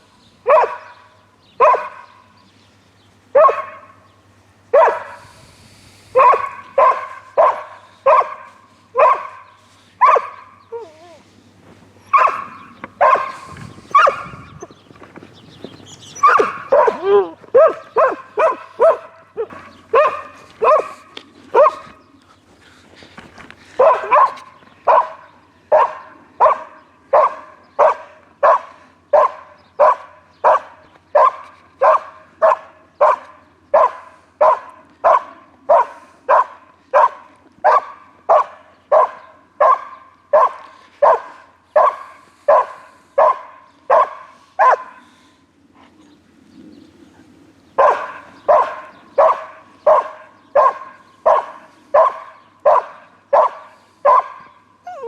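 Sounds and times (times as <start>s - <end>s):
dog barking: 0.4s - 2.2s, 3.4s - 4.0s, 4.7s - 5.3s, 6.1s - 10.6s, 12.1s - 14.4s, 16.2s - 22.0s, 23.8s - 45.1s, 47.8s - 55.0s.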